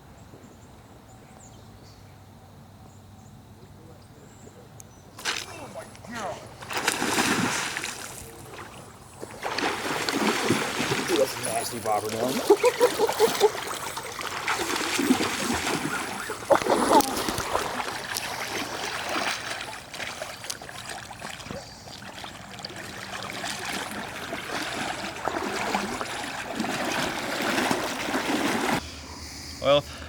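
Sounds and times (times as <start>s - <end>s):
water splashing: 5.2s - 28.8s
river current rushing: 9.4s - 28.8s.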